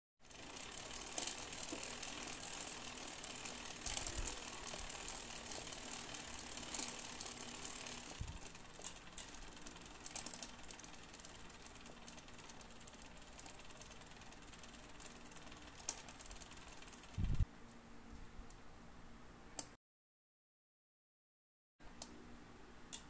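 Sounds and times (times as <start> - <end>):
mechanical clicking and rattling: 0.2 - 17.5.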